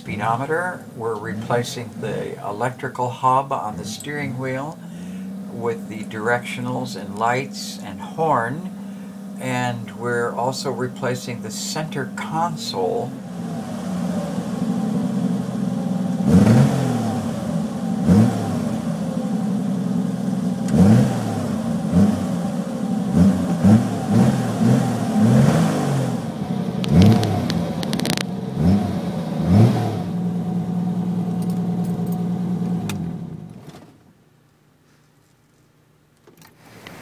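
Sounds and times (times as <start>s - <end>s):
car engine idling: 0.0s - 33.7s
engine throttle blips: 0.0s - 33.7s.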